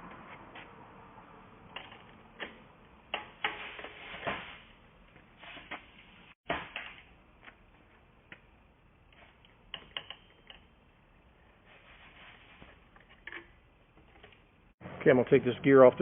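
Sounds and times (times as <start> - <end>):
tools clicking on bicycle parts: 9.1 - 10.8.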